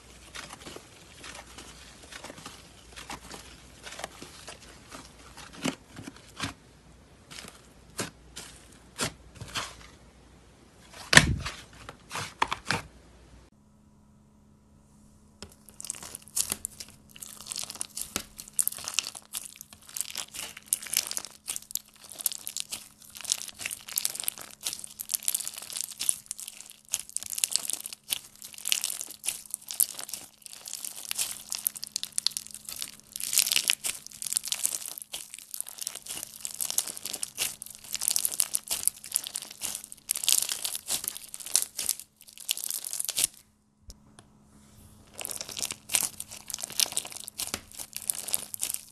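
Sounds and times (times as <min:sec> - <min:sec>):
faint steady hum: 0:00.0 - 0:48.9
slime crackling and popping: 0:15.4 - 0:43.4, 0:45.1 - 0:48.9.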